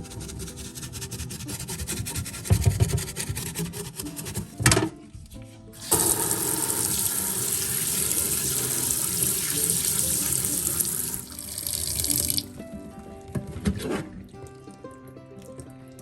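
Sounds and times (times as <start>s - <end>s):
sink faucet water running: 5.8s - 12.6s.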